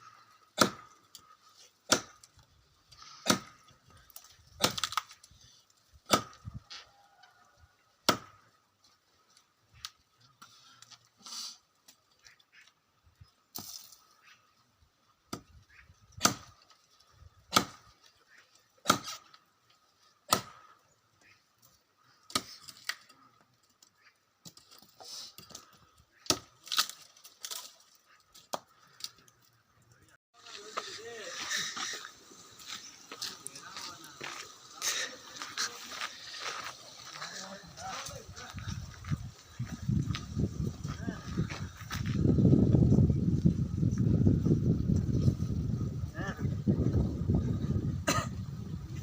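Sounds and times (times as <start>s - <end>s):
axe chopping wood: 0.5s - 1.0s, 1.8s - 2.4s, 3.2s - 3.6s, 4.6s - 5.1s, 6.0s - 6.5s, 8.0s - 8.5s, 16.2s - 16.6s, 17.5s - 17.9s, 18.8s - 19.3s, 20.2s - 20.7s, 22.3s - 23.1s, 26.2s - 27.0s.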